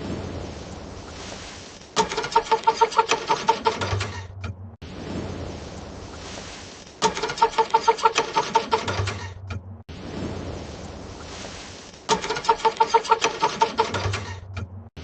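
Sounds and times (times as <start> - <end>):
car engine cranking: 2.0 - 4.7, 7.0 - 9.8, 12.1 - 14.9.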